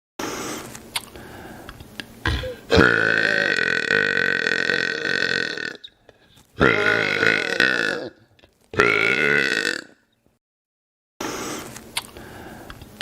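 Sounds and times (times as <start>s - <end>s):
man burping loudly: 2.3s - 5.9s, 6.6s - 10.0s.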